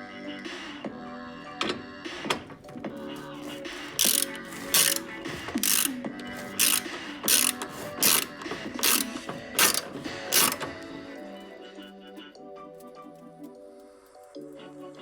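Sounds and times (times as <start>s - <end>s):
background music: 0.0s - 15.0s
ratchet wrench clicking: 3.9s - 10.7s.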